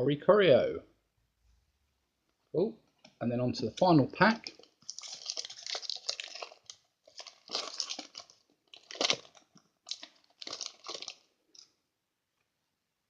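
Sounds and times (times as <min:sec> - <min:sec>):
foil wrapper crinkling and tearing: 0:04.4 - 0:11.7.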